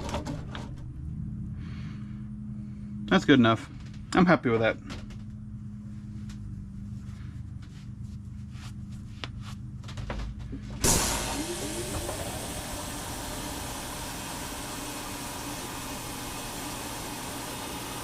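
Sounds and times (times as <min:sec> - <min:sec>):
low hum: 0:00.0 - 0:17.6
ultrasonic cleaner hissing buzz: 0:10.8 - 0:18.0.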